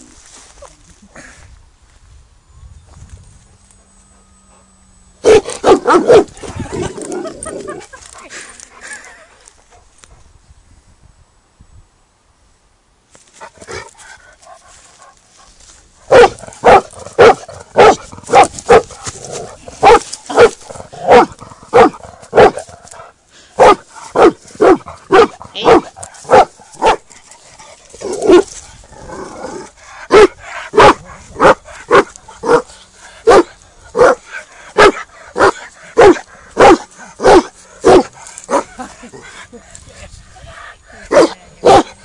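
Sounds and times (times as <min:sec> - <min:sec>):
dog barking: 0:05.2 - 0:06.4, 0:16.1 - 0:18.9, 0:19.8 - 0:22.6, 0:23.6 - 0:27.0, 0:30.1 - 0:38.7, 0:41.1 - 0:42.0.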